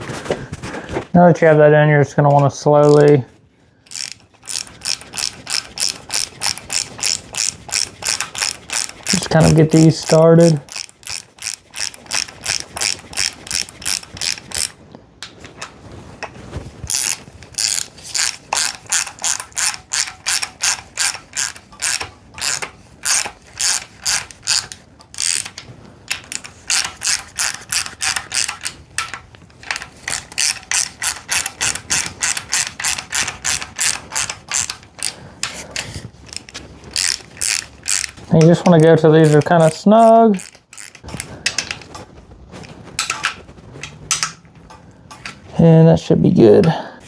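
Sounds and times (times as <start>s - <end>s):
ratchet wrench clicking: 2.3s - 3.2s, 3.9s - 14.8s, 16.9s - 41.9s, 44.1s - 44.4s.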